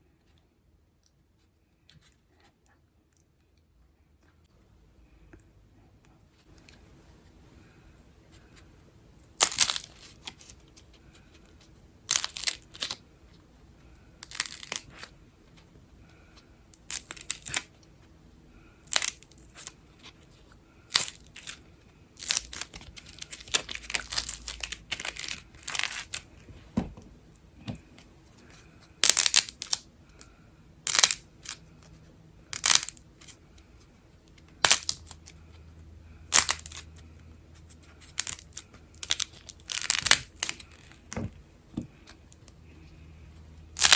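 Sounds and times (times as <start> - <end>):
slime crackling and tearing: 9.4 - 10.5, 12.1 - 13.0, 14.2 - 15.1, 16.8 - 17.8, 20.9 - 21.6, 22.2 - 26.3, 32.6 - 33.4, 34.6 - 35.3, 36.3 - 36.9, 38.0 - 40.8.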